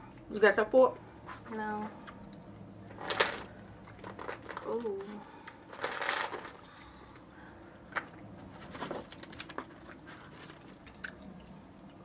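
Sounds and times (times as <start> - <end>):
chewing and eating sounds: 3.5 - 12.0.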